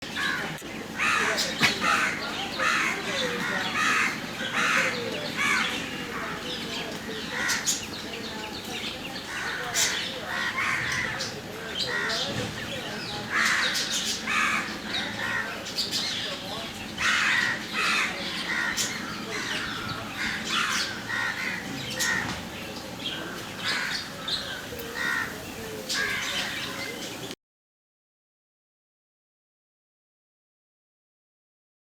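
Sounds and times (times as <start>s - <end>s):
crows cawing: 0.1s - 8.3s, 9.2s - 16.2s, 16.9s - 26.9s.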